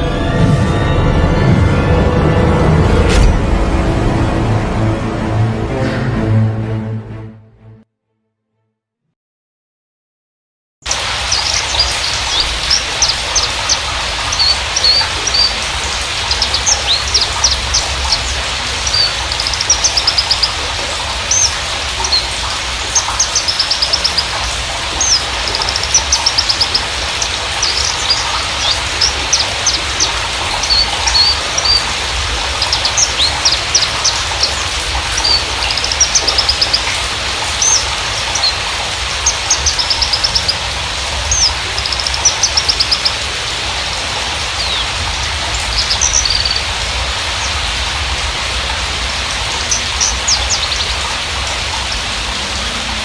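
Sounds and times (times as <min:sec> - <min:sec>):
low hum: 0:00.0 - 0:06.2
bird singing chirps and trills: 0:10.9 - 0:48.0, 0:48.6 - 0:53.0.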